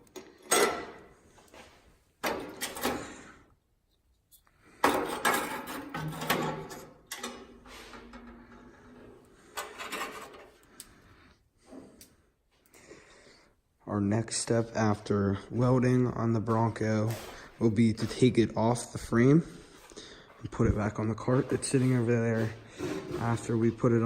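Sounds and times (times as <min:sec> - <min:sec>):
sheet metal clattering and scraping: 0:00.0 - 0:01.1, 0:02.2 - 0:03.2, 0:04.8 - 0:10.7, 0:21.1 - 0:24.0.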